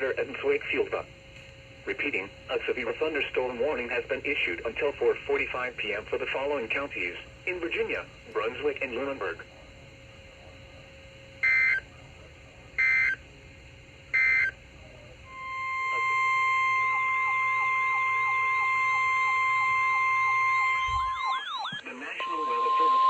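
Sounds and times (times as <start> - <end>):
steady warning alarm tone: 0.0 - 23.0
two-pitch data bursts: 11.4 - 11.8, 12.8 - 13.2, 14.1 - 14.6, 15.3 - 23.0.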